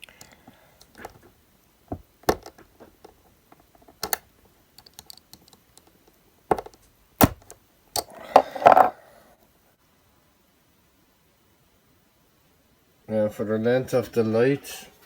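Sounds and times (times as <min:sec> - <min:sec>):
plastic clips clicking: 0:03.8 - 0:05.9.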